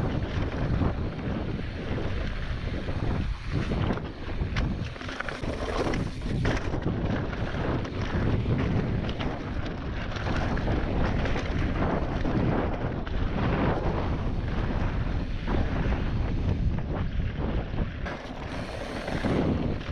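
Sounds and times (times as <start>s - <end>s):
bike rattling and knocking: 0.0s - 19.9s
wind buffeting microphone: 0.0s - 19.9s
tyres rumbling on stone: 3.5s - 12.5s, 18.0s - 19.9s.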